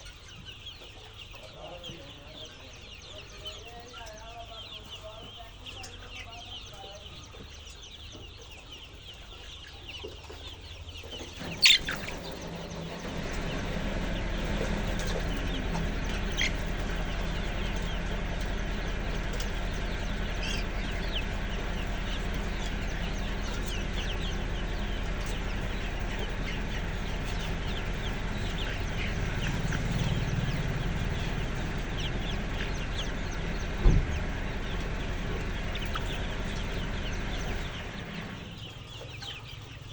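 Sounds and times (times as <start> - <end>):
chickens clucking: 0.0 - 39.9
steady low hum: 11.2 - 39.0
sharp knocks: 33.8 - 34.2.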